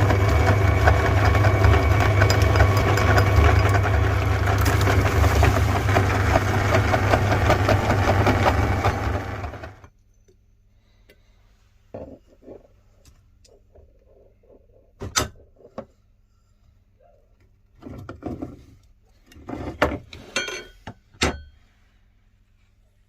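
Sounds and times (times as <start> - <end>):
electric meat grinder running: 0.0 - 9.9.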